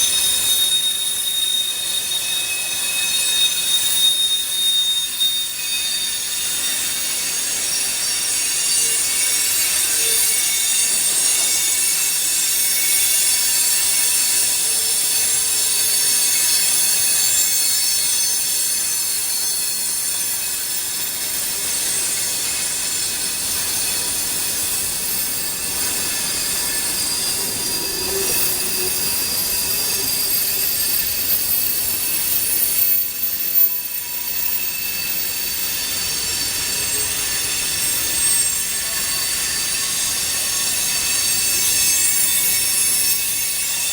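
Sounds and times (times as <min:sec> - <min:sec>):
train rolling: 0:00.0 - 0:43.9
train wheels screeching on rails: 0:00.0 - 0:43.9.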